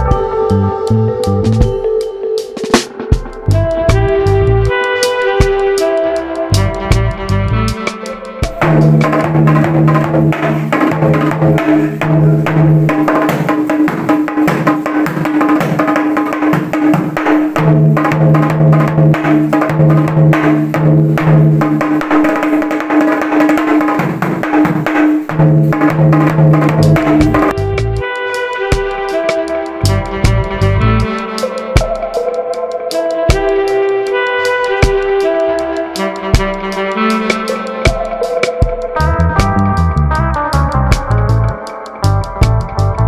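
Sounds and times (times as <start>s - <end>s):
held low notes: 0.0s - 13.0s, 25.3s - 28.1s, 29.3s - 32.2s, 35.0s - 43.0s
fast percussion: 1.5s - 32.4s, 33.0s - 43.0s.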